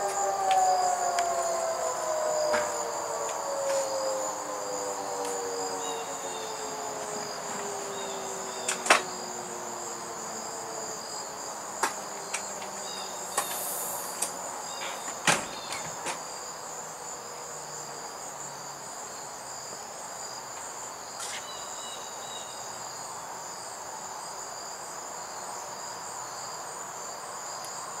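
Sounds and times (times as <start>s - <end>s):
tornado siren winding down: 0.0s - 15.7s
crickets chirping: 0.0s - 28.0s.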